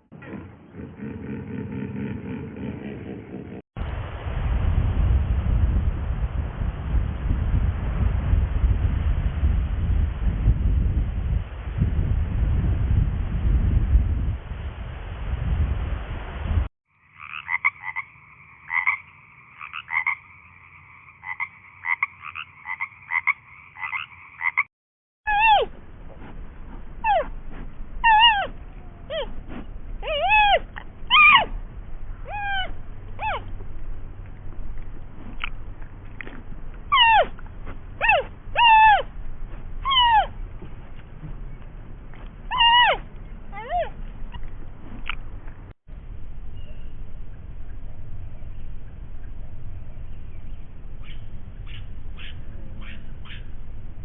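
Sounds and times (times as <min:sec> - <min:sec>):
animal croaking calls: 0:00.1 - 0:03.6, 0:17.0 - 0:24.7, 0:25.3 - 0:25.7, 0:28.0 - 0:33.7, 0:36.2 - 0:37.4, 0:38.0 - 0:39.2, 0:39.8 - 0:40.4, 0:42.5 - 0:44.4
short high falling animal calls: 0:32.2 - 0:33.5, 0:42.5 - 0:44.0.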